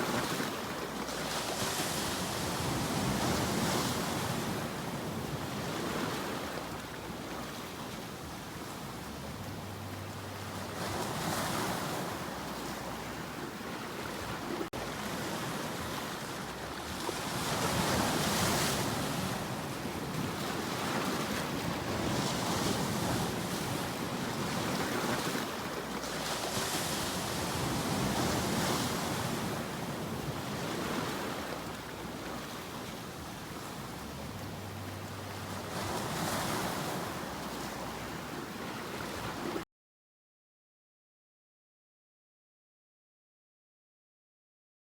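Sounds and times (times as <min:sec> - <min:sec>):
waves washing onto rocky shore: 0:14.3 - 0:34.0.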